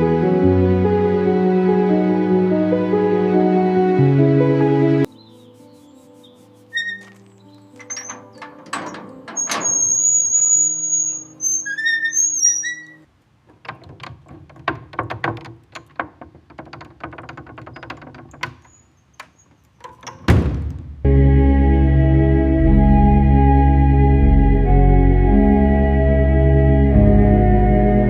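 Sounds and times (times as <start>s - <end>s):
ambient music: 0.0s - 9.5s, 21.0s - 28.0s
thunks: 7.0s - 10.0s, 13.5s - 21.0s
whistle-like tones: 9.7s - 13.0s
light irregular tapping and clicking: 13.5s - 20.3s.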